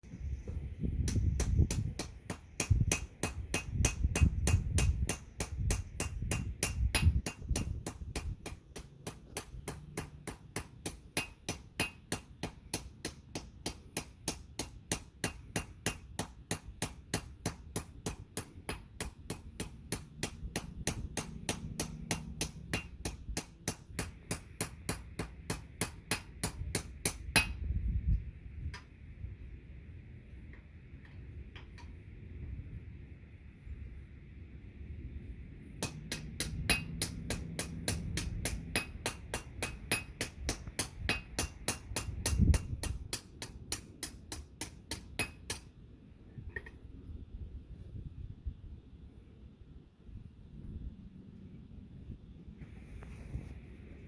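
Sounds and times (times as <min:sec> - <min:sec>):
hammer striking steel on anvil: 0:01.0 - 0:27.7, 0:35.8 - 0:45.8.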